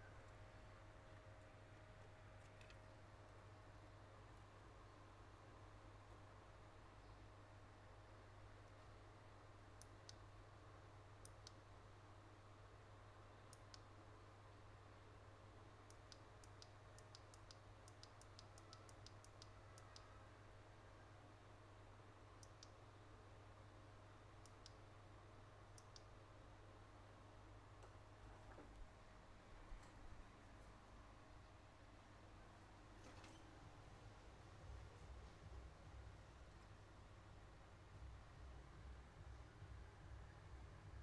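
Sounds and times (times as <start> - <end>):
small sharp clicks: 15.8 - 20.2, 25.7 - 26.1.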